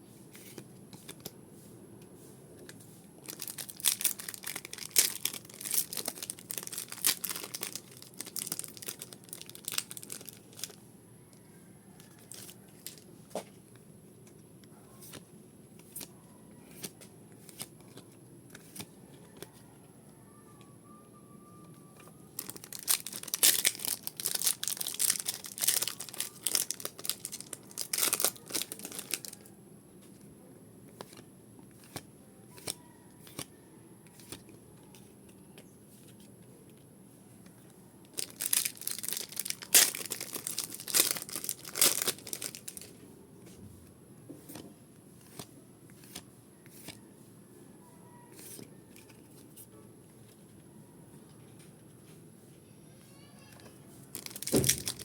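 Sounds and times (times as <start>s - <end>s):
foil wrappers tearing and crinkling: 3.2s - 10.8s, 22.3s - 29.4s, 38.1s - 42.9s, 54.1s - 55.0s.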